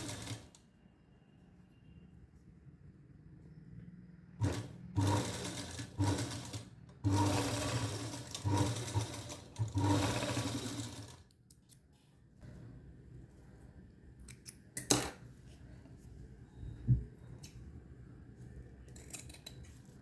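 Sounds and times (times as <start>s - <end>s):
sewing machine stitching: 0.0s - 0.5s, 4.4s - 11.2s.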